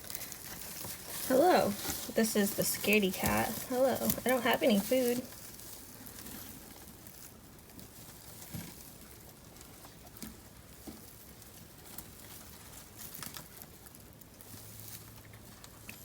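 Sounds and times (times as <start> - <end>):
tortoises tapping and rustling: 0.0 - 16.0.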